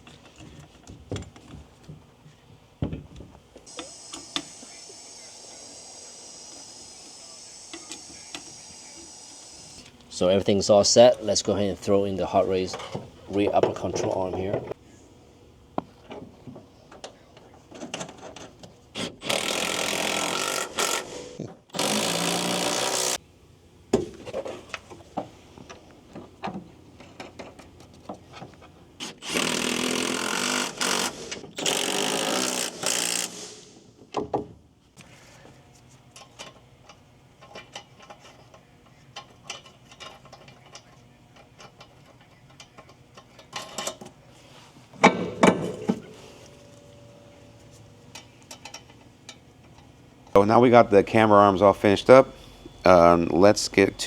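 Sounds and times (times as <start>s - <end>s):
impact wrench bursts: 3.7s - 9.8s, 19.0s - 23.2s, 29.0s - 33.8s
tools clinking: 48.1s - 50.0s.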